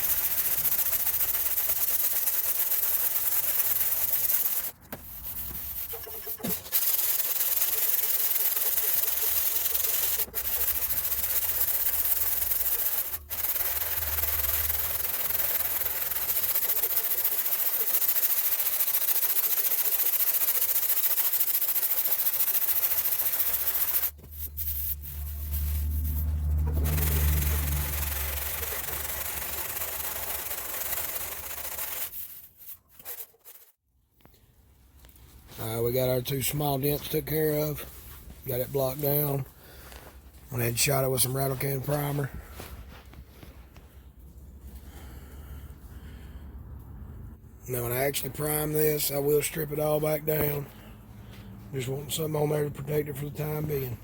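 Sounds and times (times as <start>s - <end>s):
sanding on metal: 0.0s - 33.8s
low hum: 24.1s - 31.4s.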